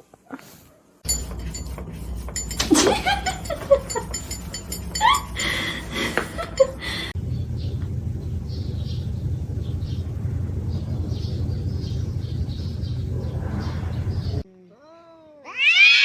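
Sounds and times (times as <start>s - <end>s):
small clinks: 1.0s - 7.2s
steady low hum: 1.0s - 14.4s
person laughing: 2.6s - 7.2s.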